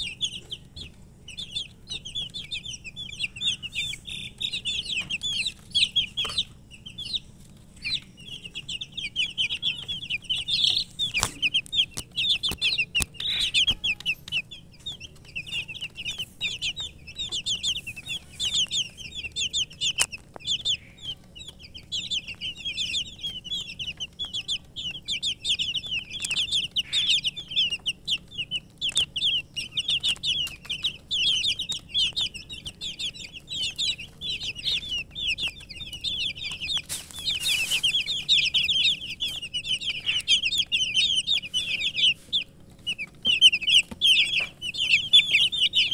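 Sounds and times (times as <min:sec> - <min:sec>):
chicks peeping: 0:00.0 - 0:45.9
sharp clicks: 0:07.8 - 0:45.9.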